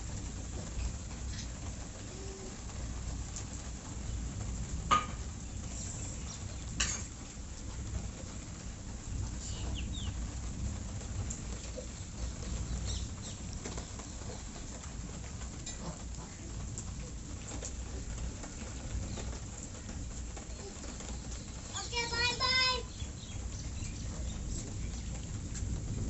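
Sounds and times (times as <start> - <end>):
birds calling faintly: 5.1 - 7.4, 8.4 - 10.5, 11.3 - 25.7
steady low rumble: 22.8 - 26.0.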